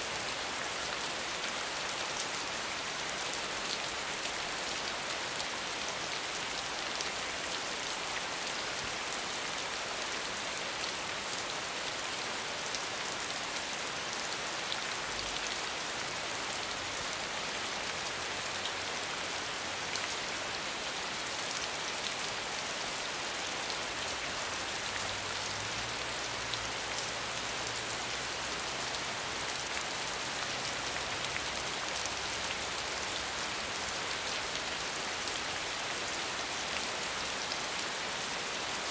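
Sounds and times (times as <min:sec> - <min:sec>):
rain on a hard surface: 0:00.0 - 0:38.9.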